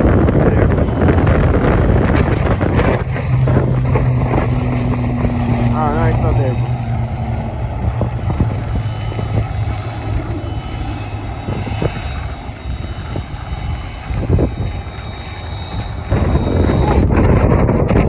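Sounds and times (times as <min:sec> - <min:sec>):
jet engines running: 0:00.0 - 0:18.0
wind knocking on microphone: 0:16.1 - 0:18.0.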